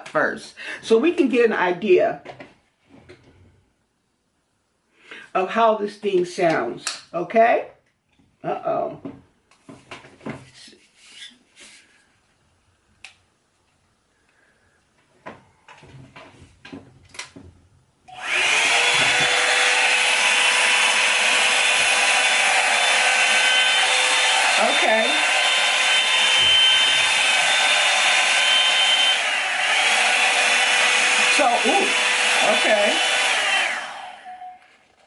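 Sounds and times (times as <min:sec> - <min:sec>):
blow dryer brush running: 0:18.1 - 0:34.7.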